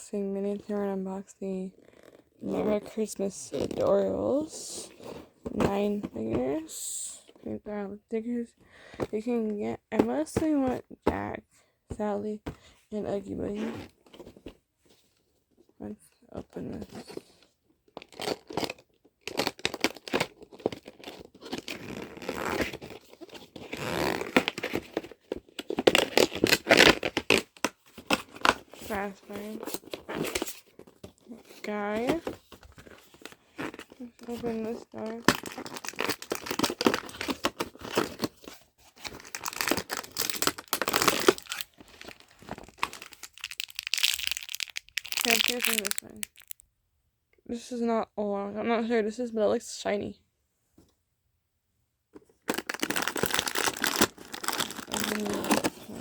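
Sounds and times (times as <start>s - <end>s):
packaging tearing and crinkling: 18.0s - 27.5s, 35.0s - 46.6s, 52.5s - 56.0s.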